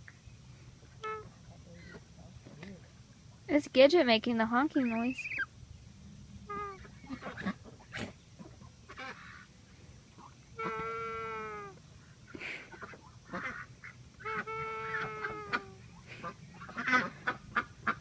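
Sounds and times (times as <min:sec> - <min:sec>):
gosling honking calls: 0:04.8 - 0:05.5, 0:06.4 - 0:09.5, 0:10.2 - 0:11.8, 0:12.7 - 0:18.0
gosling snuffles: 0:07.2 - 0:08.2.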